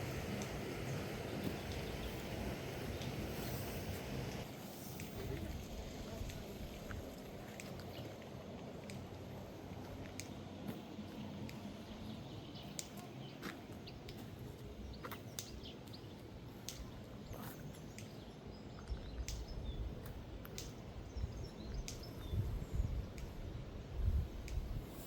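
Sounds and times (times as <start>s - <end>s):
steady low background noise: 0.0s - 25.0s.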